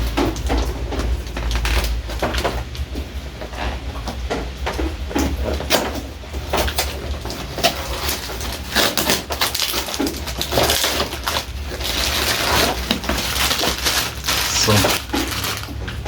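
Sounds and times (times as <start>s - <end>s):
packaging crinkling and rustling: 6.5s - 16.0s.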